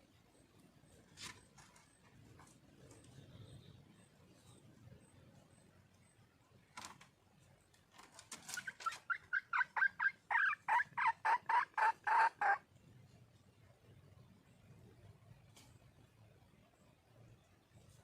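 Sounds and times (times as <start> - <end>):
hen clucking: 8.2 - 12.7
hen calling: 8.5 - 12.6.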